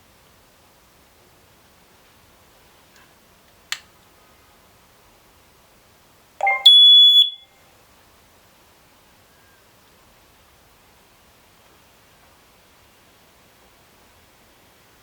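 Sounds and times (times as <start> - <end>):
brief lower-pitched sound: 6.4 - 6.8
loud high-pitched beep: 6.4 - 7.5.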